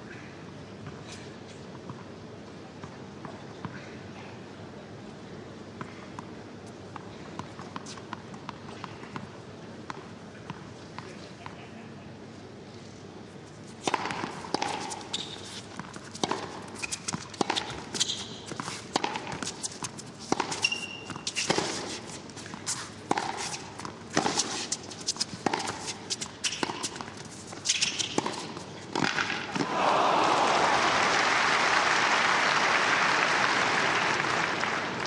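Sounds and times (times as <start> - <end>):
tennis ball struck: 13.9 - 15.0, 16.2 - 17.9, 19.0 - 19.5, 23.1 - 24.6, 25.4 - 27.1, 28.0 - 29.7
shoe squeaks on court: 14.7 - 28.8
applause: 29.6 - 35.0.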